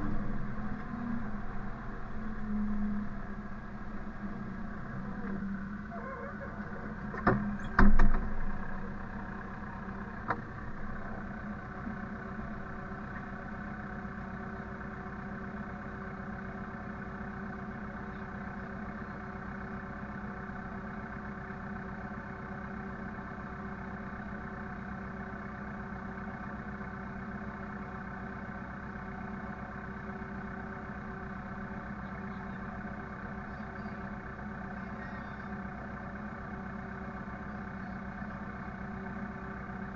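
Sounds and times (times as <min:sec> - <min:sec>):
engine running steadily: 0:00.0 - 0:39.9.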